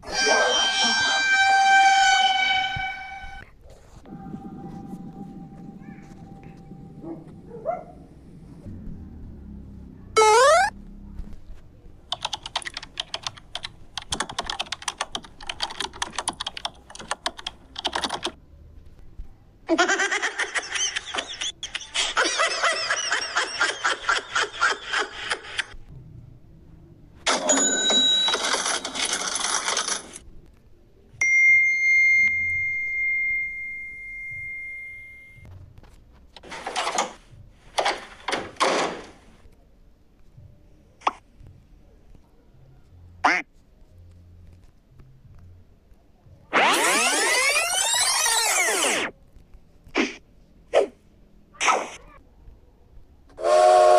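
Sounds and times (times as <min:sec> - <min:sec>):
typing on computer keyboard: 0:12.1 - 0:18.4
bell-like strike ringing: 0:31.2 - 0:35.4.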